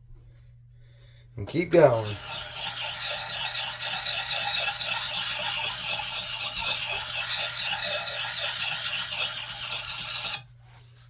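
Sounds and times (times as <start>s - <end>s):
sharpening stone scraping axe edge: 1.9s - 10.4s.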